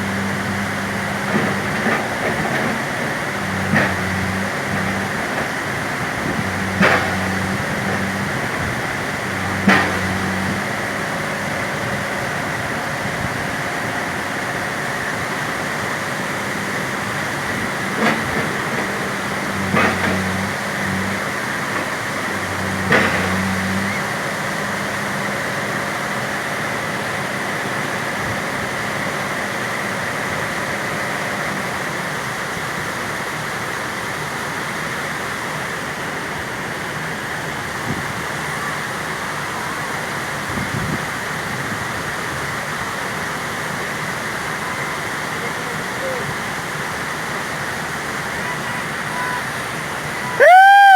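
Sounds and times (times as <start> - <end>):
backhoe diesel engine running: 0.0 - 50.9.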